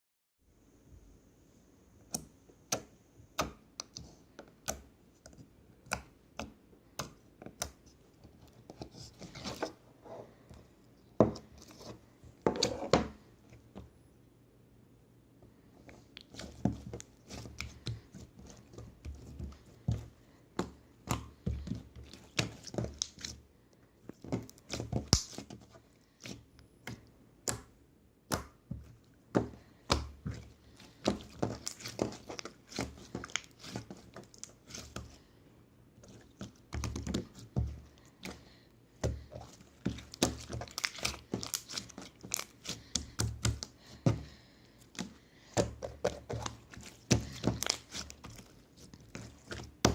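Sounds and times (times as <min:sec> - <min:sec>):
slime squishing and popping: 0:24.6 - 0:25.4, 0:39.9 - 0:43.7, 0:45.6 - 0:48.4.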